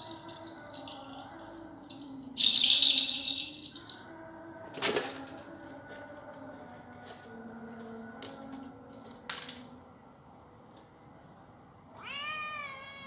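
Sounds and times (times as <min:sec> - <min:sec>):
rattling shake: 0:01.9 - 0:04.0.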